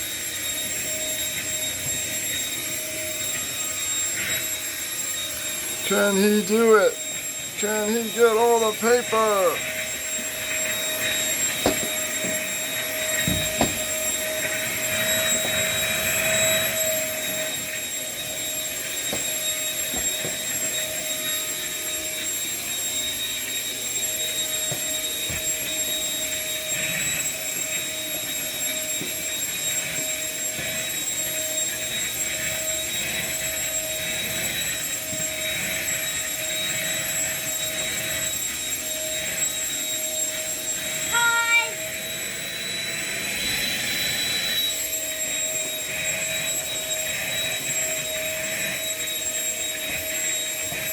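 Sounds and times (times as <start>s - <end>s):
vacuum cleaner running: 0.0s - 50.9s.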